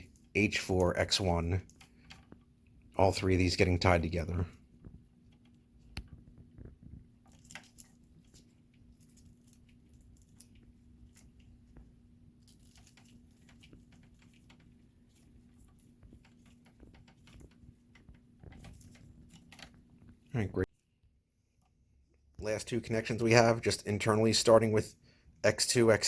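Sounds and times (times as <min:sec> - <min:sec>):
wires clicking and rustling: 0:00.0 - 0:23.6
faint steady hum: 0:00.0 - 0:26.0.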